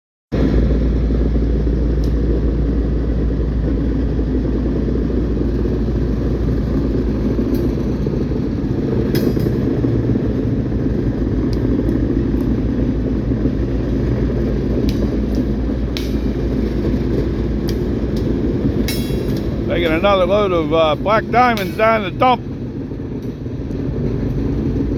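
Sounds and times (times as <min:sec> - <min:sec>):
train rumbling by: 0:00.4 - 0:24.9.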